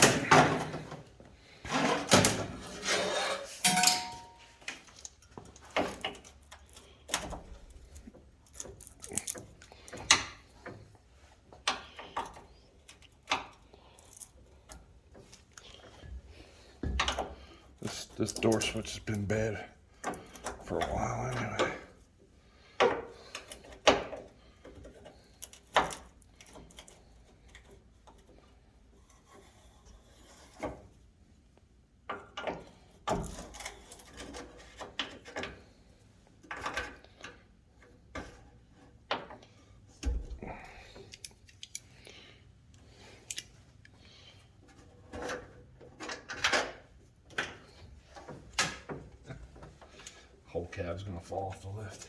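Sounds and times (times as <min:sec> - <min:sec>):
rubbing and scraping: 0:01.4 - 0:03.7.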